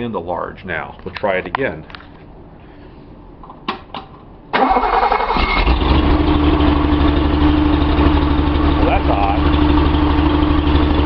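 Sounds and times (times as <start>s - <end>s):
car engine cranking and running: 4.6s - 11.0s.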